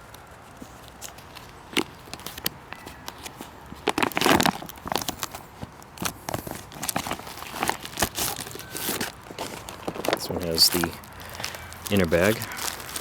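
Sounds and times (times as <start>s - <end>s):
plastic pouch crinkling: 0.0s - 13.0s
plastic tearing rip: 1.0s - 13.0s.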